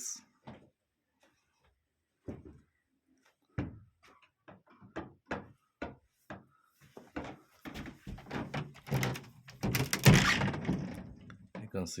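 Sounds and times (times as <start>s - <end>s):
footsteps on wooden floor: 0.4s - 8.6s.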